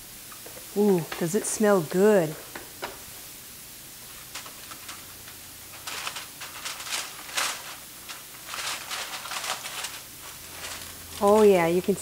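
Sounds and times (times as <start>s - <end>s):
aluminum foil crinkling: 4.0s - 12.0s.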